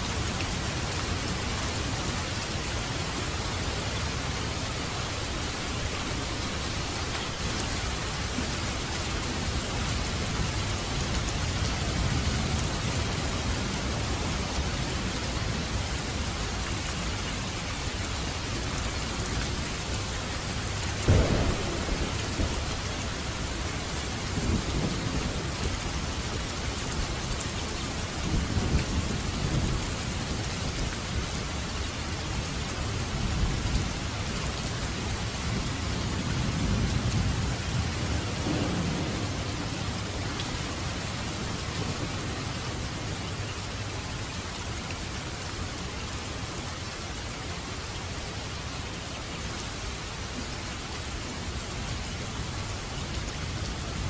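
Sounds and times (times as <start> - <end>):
heavy rain falling: 0.0 - 54.0
low thunder rumbles: 18.8 - 31.4, 32.4 - 43.9
thunderclap: 21.0 - 23.6, 38.2 - 40.8.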